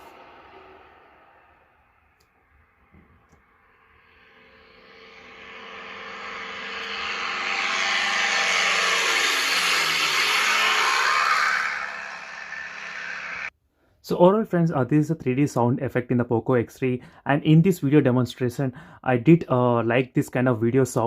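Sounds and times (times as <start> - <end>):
aircraft flying by: 0.0 - 13.5.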